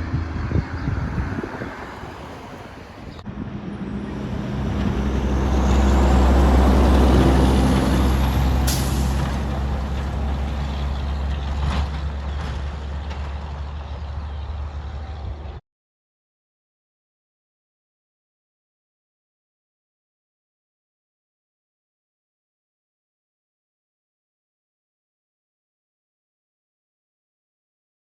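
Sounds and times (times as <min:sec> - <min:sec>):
truck diesel engine running: 0:00.0 - 0:15.6.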